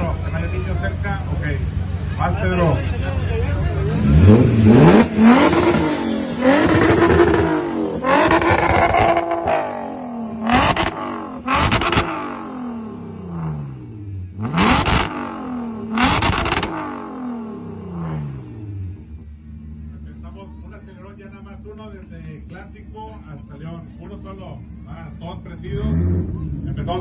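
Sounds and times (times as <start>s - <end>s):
car engine revving: 0.0s - 20.4s, 25.2s - 27.0s.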